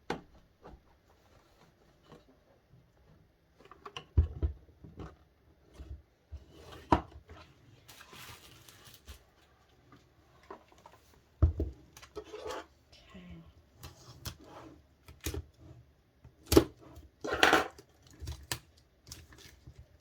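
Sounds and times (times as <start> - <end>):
packaging rustling: 7.8 - 9.5.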